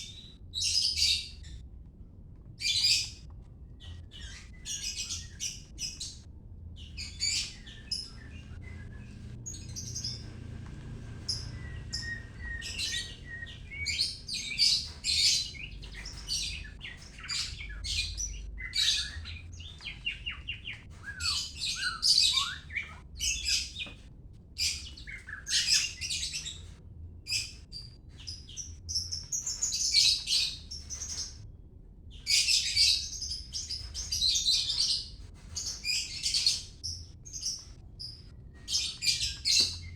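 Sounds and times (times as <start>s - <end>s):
songbird singing: 6.8s - 24.0s.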